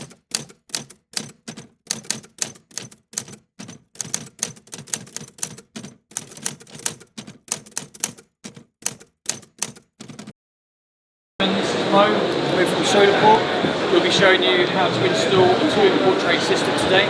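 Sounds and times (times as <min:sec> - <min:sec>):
keyboard typing: 0:00.0 - 0:10.4.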